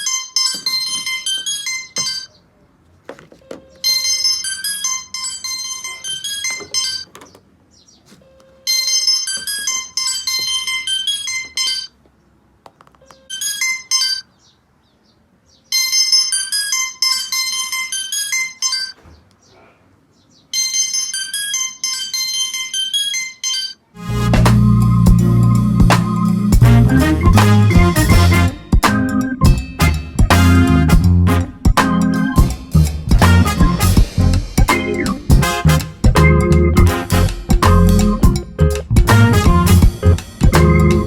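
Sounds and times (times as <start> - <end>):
mobile phone ringtone: 0.0 - 2.3, 3.6 - 7.1, 8.3 - 12.0, 13.1 - 14.3, 15.7 - 19.0, 20.6 - 23.8.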